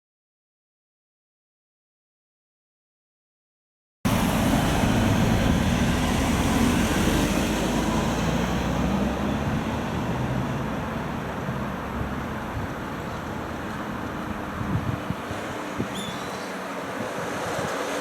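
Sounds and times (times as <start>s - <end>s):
passing vehicle rumble: 4.1s - 18.0s.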